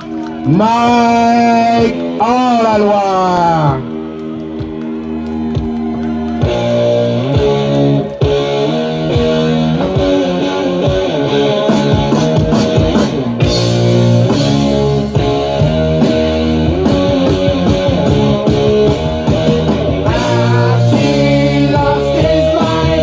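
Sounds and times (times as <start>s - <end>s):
rock music with electric guitar: 0.0s - 23.0s
person singing: 19.6s - 23.0s.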